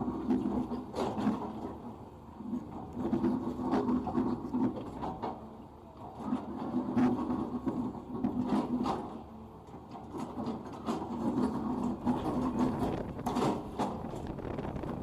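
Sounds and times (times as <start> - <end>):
excavator diesel engine under load: 11.2 - 15.0.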